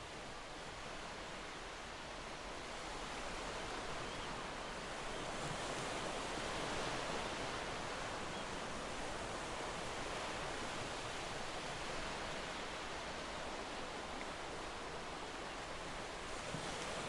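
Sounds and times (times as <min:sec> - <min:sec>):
sea surf washing ashore: 0:00.6 - 0:17.0.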